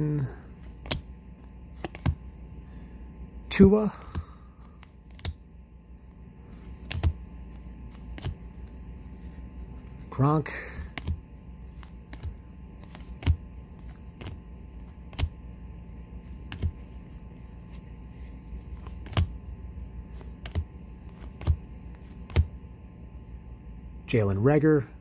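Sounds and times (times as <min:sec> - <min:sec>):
low steady hum: 0:00.0 - 0:25.0
cards flipped by hand: 0:00.6 - 0:02.3, 0:04.0 - 0:05.4, 0:06.0 - 0:10.2, 0:10.8 - 0:15.4, 0:16.1 - 0:19.4, 0:20.0 - 0:22.6.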